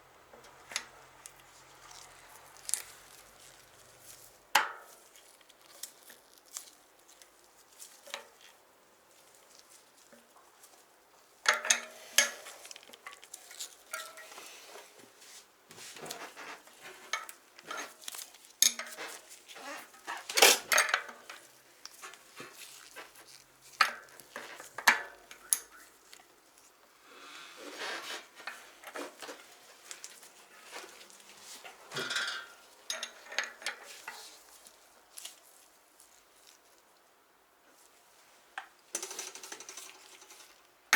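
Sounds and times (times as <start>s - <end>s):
metal parts and tools clinking: 32.0s - 34.2s.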